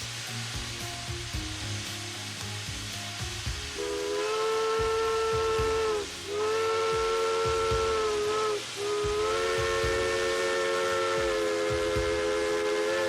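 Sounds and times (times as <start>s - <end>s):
steam hissing: 0.0s - 13.0s
steam locomotive whistle: 3.8s - 13.0s.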